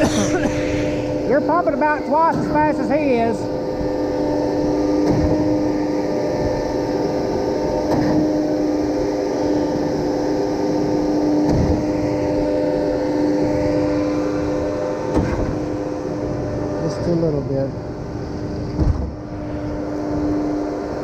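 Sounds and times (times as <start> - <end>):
concrete pump running: 0.0 - 21.0.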